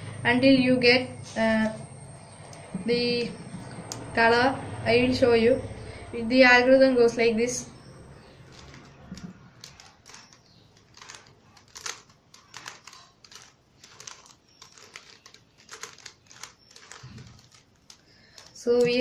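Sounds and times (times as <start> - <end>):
puzzle cube plastic clicks: 8.4 - 19.0.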